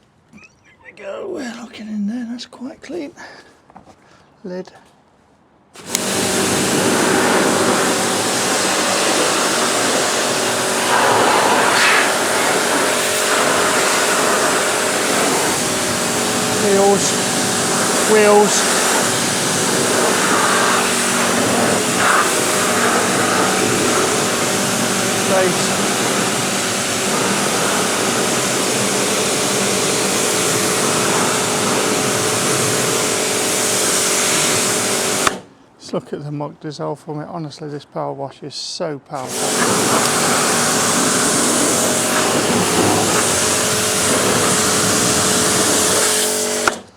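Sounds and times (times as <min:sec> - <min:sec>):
pressure washer motor humming: 0:05.8 - 0:35.4, 0:39.2 - 0:46.9
water jet hissing: 0:05.8 - 0:35.5, 0:39.2 - 0:46.9.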